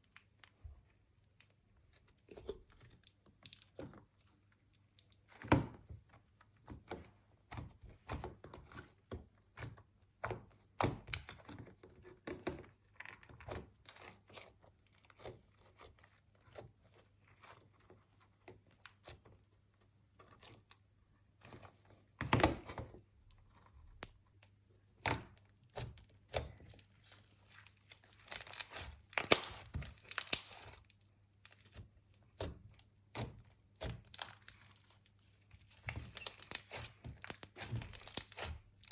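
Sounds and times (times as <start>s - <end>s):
slime squishing and popping: 27.9s - 34.8s, 35.7s - 38.9s.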